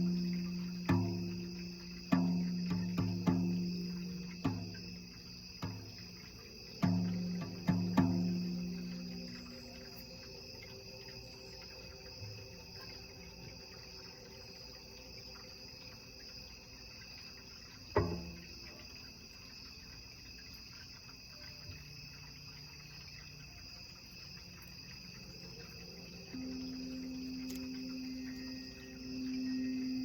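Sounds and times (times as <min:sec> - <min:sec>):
sharp ringing knock: 0:00.0 - 0:10.0, 0:18.0 - 0:18.5, 0:26.3 - 0:30.0
singing bowl tone: 0:00.0 - 0:14.6, 0:25.3 - 0:30.0
crickets chirping: 0:00.0 - 0:30.0.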